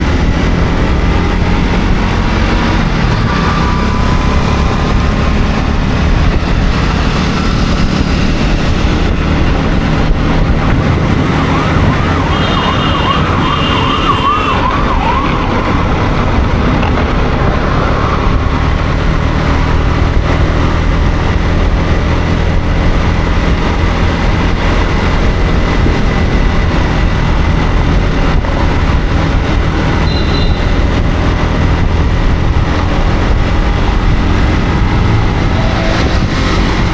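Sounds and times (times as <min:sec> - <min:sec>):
motorcycle engine running: 0:00.0 - 0:36.9
road and wind noise: 0:00.0 - 0:36.9
siren warble: 0:10.1 - 0:16.7
short high beeps: 0:30.0 - 0:30.7.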